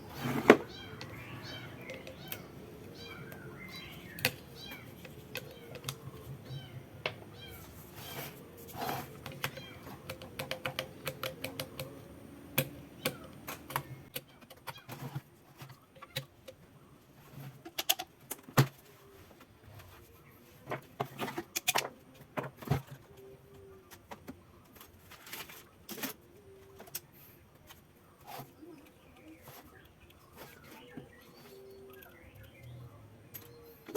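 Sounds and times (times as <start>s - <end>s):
tools and metal parts clicking: 0.9s - 6.3s, 8.8s - 14.8s.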